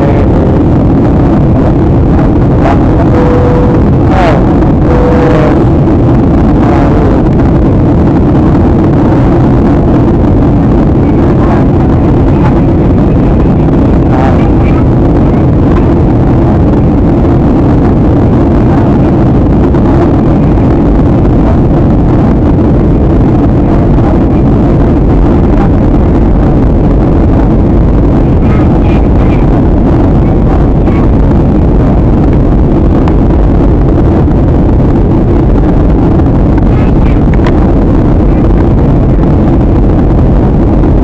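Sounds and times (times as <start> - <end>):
jet cabin engine and airflow noise: 0.0 - 41.0.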